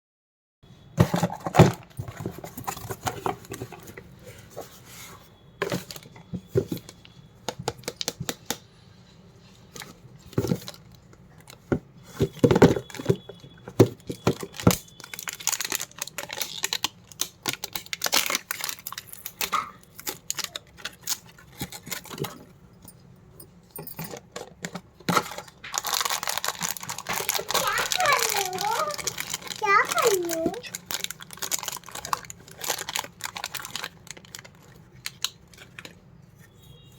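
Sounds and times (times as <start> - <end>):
plastic wrappers crinkling and tearing: 12.2 - 22.5, 24.1 - 36.0.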